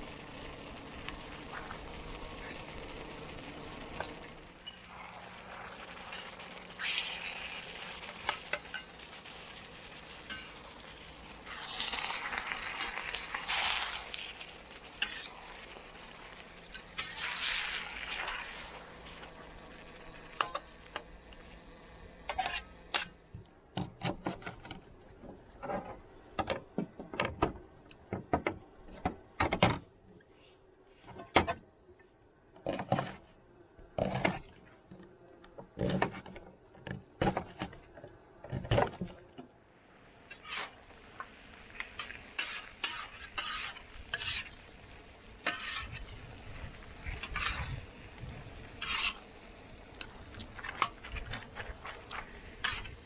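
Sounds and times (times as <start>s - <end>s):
cookware clinking and scraping: 10.2s - 10.7s, 45.5s - 46.0s, 47.2s - 47.7s, 48.8s - 49.2s, 52.6s - 53.0s.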